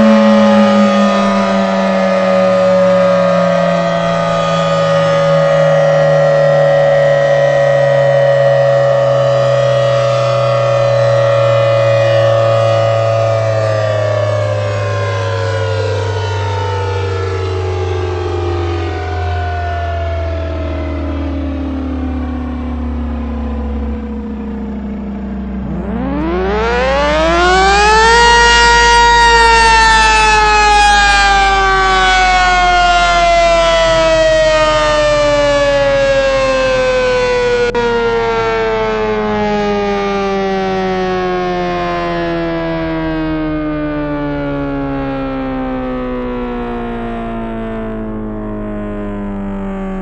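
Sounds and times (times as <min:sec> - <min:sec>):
steady low hum: 0:00.0 - 0:14.2, 0:18.0 - 0:28.9
siren winding up and down: 0:00.0 - 0:50.0.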